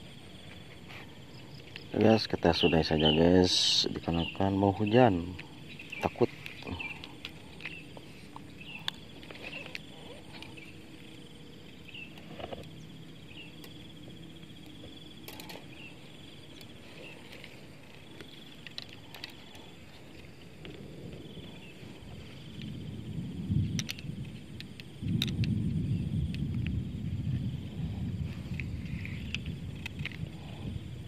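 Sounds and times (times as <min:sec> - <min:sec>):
insects trilling: 0:00.0 - 0:31.0
low background rush: 0:00.0 - 0:31.0
scattered clicks: 0:16.5 - 0:20.8, 0:23.6 - 0:26.8, 0:28.4 - 0:30.4
low rumble: 0:19.6 - 0:31.0.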